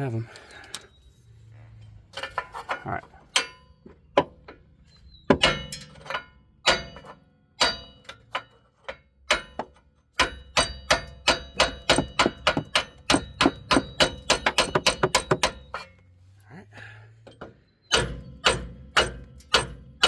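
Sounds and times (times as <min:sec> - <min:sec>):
hammer striking steel: 0:03.3 - 0:03.7, 0:05.3 - 0:16.0, 0:17.9 - 0:20.0.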